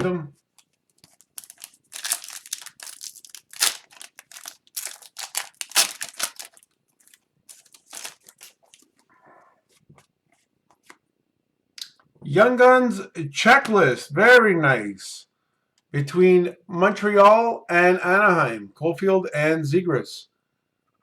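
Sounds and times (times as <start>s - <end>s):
handling rustles: 0.5s - 9.0s
foil wrapper crinkling and tearing: 1.0s - 8.9s.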